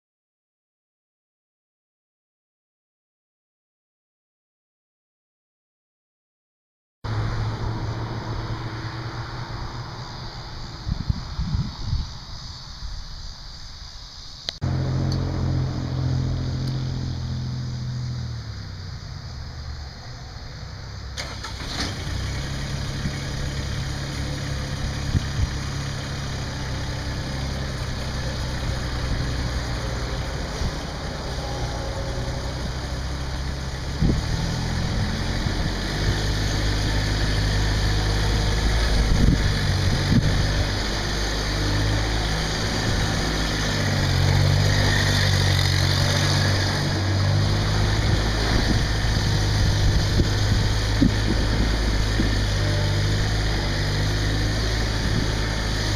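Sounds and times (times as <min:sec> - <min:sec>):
tractor diesel engine running: 0:14.6 - 0:55.9.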